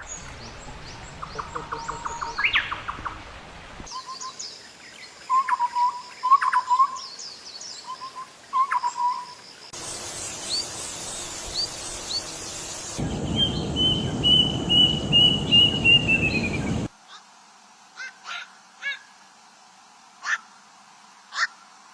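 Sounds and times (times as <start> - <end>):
bird calls: 0.0 - 3.3, 7.8 - 16.9
hiss: 9.6 - 16.9
quick run of even bird notes: 9.9 - 16.9
short high bird chirps: 13.0 - 16.9.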